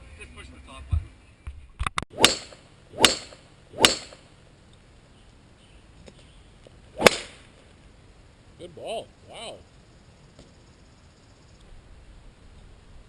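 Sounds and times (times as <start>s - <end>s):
golf club striking ball: 2.2s - 4.2s, 7.0s - 7.5s.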